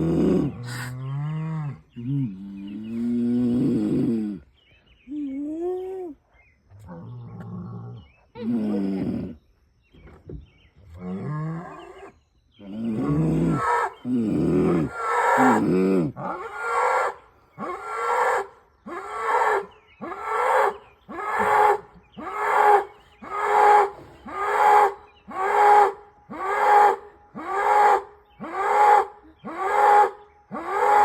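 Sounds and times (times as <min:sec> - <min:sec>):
cow calling: 0:12.9 - 0:31.0.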